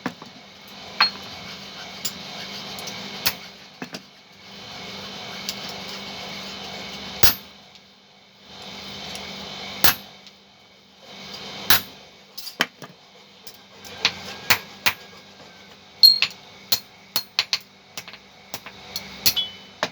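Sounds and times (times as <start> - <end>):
hammer striking metal: 19.3 - 19.7.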